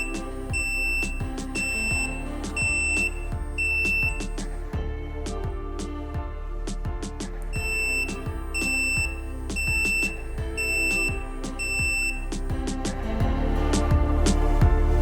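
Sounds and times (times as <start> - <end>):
high electronic buzzer beeps: 0.0 - 4.4, 7.6 - 12.4
background music with steady beat: 0.0 - 15.0.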